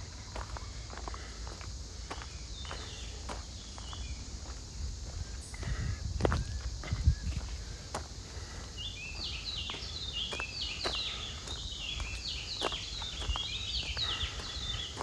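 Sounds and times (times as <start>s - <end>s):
footsteps on trail: 0.3s - 15.0s
low rumble of wind: 1.8s - 15.0s.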